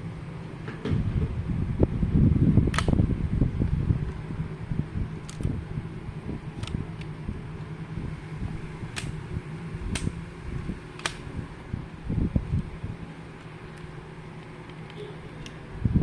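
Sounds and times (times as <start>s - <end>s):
handling rumble: 0.0s - 16.0s
steady low hum: 0.0s - 16.0s
plastic toy gun clicks: 2.7s - 2.9s, 11.0s - 11.2s.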